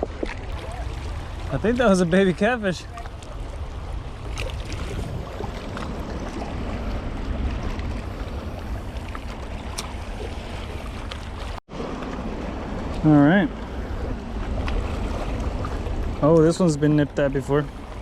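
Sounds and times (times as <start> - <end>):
water rushing over spillway: 0.0 - 3.3
wind on microphone: 2.8 - 16.2.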